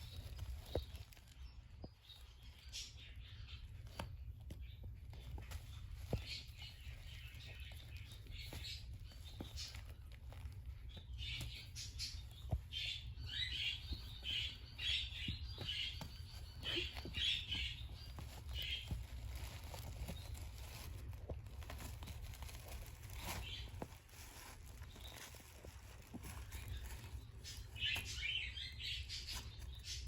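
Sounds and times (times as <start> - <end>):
faint pattering: 0.0 - 30.0.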